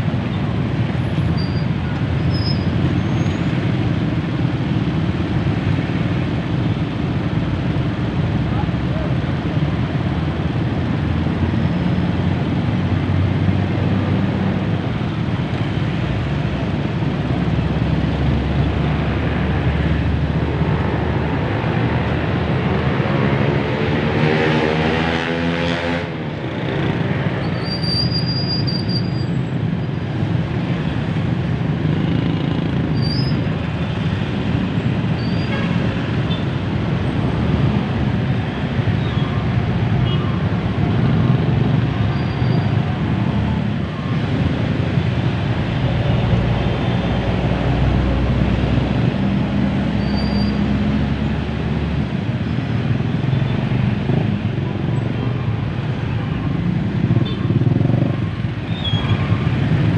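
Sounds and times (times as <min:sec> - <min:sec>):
road traffic engines: 0:00.0 - 0:59.9
vehicle passing by: 0:18.4 - 0:27.3.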